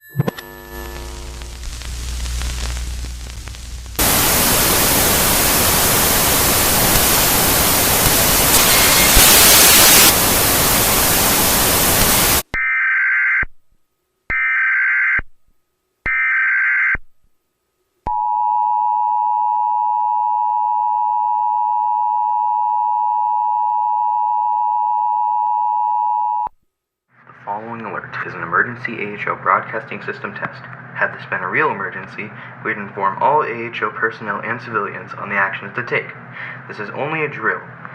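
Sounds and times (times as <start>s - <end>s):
white-noise static burst: 0.5s - 12.4s
data tone bursts: 4.0s - 12.4s.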